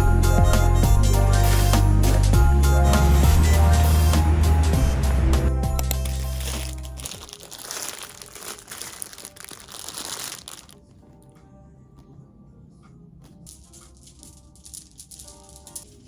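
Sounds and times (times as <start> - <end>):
background music: 0.0 - 16.0
crinkling handling noise: 5.8 - 11.4, 13.3 - 16.0.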